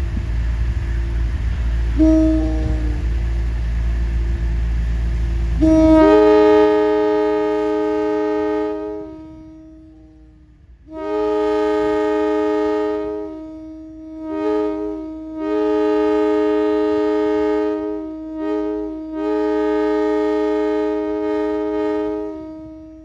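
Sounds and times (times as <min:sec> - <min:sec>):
low rumble: 0:00.0 - 0:14.2
train air horn blasts: 0:01.6 - 0:04.0, 0:04.6 - 0:23.0.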